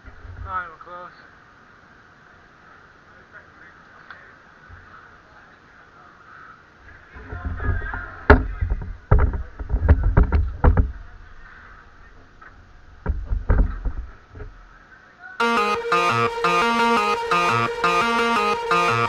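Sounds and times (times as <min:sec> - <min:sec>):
music: 0:15.4 - 0:19.0.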